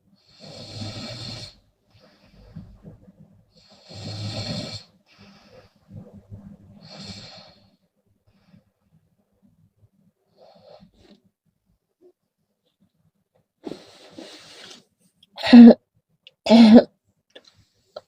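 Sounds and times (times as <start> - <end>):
quiet breaths: 0.0 - 15.4, 17.3 - 18.0
woman snoring: 0.2 - 1.6, 3.6 - 4.9.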